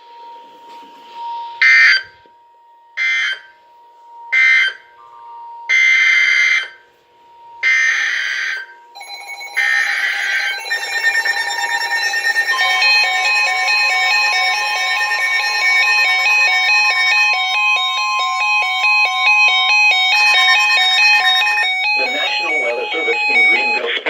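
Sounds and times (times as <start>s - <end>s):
screeching data bursts: 7.7s - 24.0s
layered stepping pitch tone: 8.5s - 24.0s.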